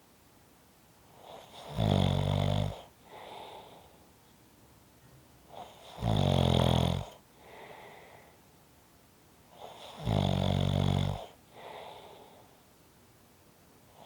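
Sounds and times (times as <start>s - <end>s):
person snoring: 1.4s - 3.7s, 5.6s - 7.8s, 9.6s - 12.2s.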